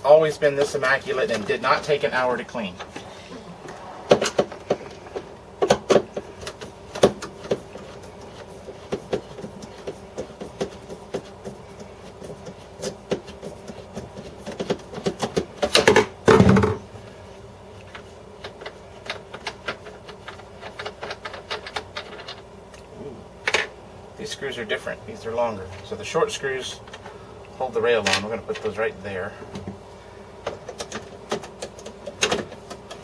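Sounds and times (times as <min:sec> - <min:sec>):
scraping rattle of plastic parts: 0:17.9 - 0:22.5, 0:25.7 - 0:29.7
plastic parts clicking and rattling: 0:18.5 - 0:22.4.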